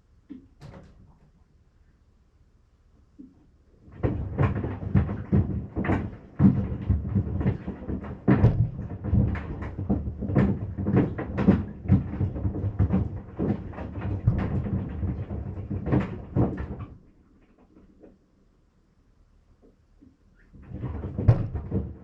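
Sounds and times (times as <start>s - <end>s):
washing machine rumble: 3.1s - 18.4s, 20.0s - 22.0s
sandals knocking in washing machine: 3.2s - 17.0s, 20.6s - 22.0s.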